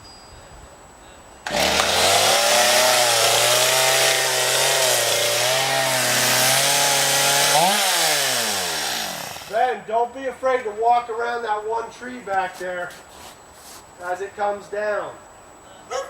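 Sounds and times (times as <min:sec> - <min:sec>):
chainsaw cutting tree: 0:01.5 - 0:09.6.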